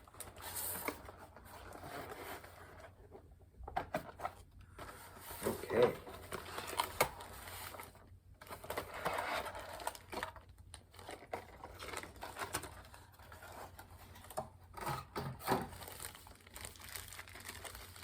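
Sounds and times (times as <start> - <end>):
packaging rustling: 3.9 - 18.0.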